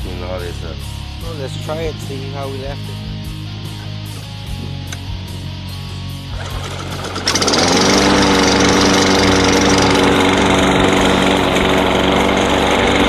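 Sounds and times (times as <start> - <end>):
lawn mower engine running: 6.3 - 13.0.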